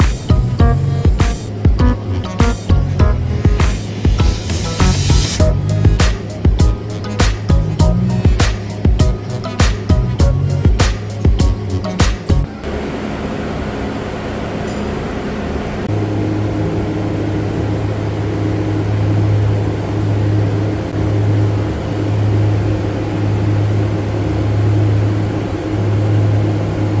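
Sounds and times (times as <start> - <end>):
welding electric buzz: 0.0 - 12.5
low mains hum: 0.0 - 27.0.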